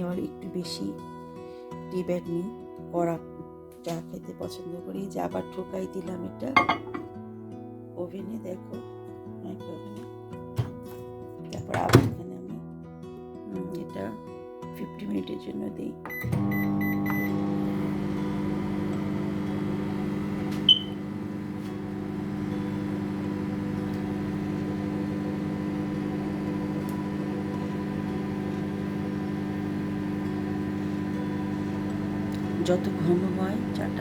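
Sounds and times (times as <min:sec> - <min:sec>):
microwave click: 0:16.1 - 0:33.0
microwave oven humming: 0:16.1 - 0:34.0.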